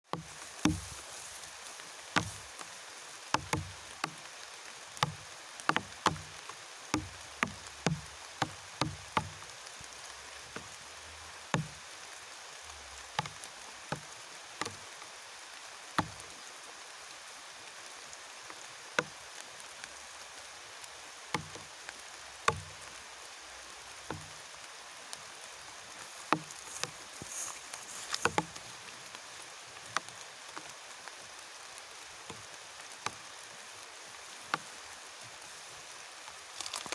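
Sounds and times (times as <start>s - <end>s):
steady rain hiss: 0.0s - 36.9s
sharp knocks and taps: 0.1s - 1.2s, 2.1s - 2.7s, 3.3s - 4.2s, 5.0s - 9.4s, 11.5s - 11.8s, 13.2s - 14.8s, 16.0s - 16.2s, 21.3s - 21.7s, 22.4s - 22.8s, 24.1s - 24.4s, 26.2s - 28.7s.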